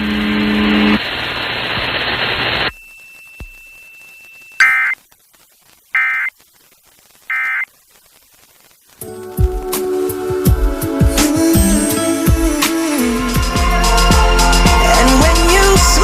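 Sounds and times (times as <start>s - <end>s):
noise hiss: 0.1s - 16.0s
digital data tone bursts: 2.7s - 5.0s, 5.9s - 6.4s, 7.3s - 7.7s.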